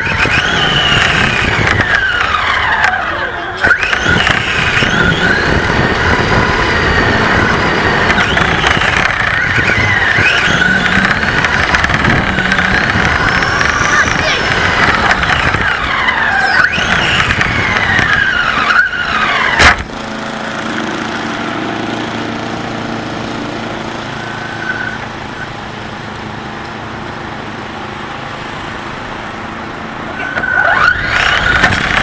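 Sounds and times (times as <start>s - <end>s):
toy car motor whining: 0.0s - 19.9s, 30.1s - 32.0s.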